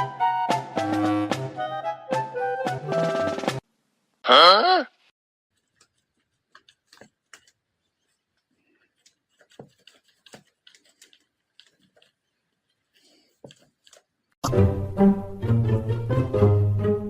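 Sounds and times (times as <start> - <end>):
faint clicks and taps: 5.6 - 14.3.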